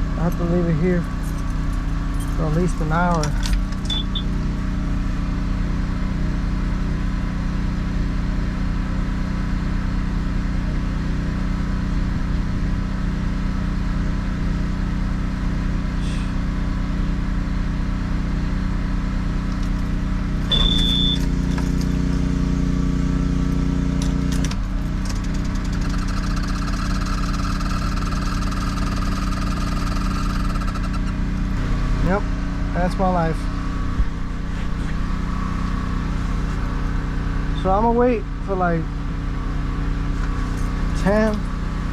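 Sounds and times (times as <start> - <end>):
vehicle engine humming: 0.0 - 41.9
short high beep: 3.9 - 4.3, 20.5 - 21.3.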